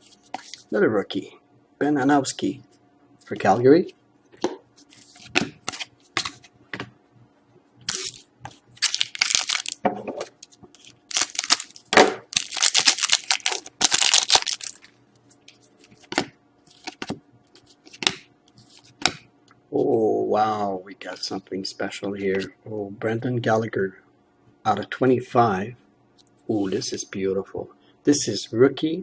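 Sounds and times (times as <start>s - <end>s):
wrappers rustling and tearing: 7.9s - 8.2s, 8.8s - 9.8s, 10.7s - 15.0s.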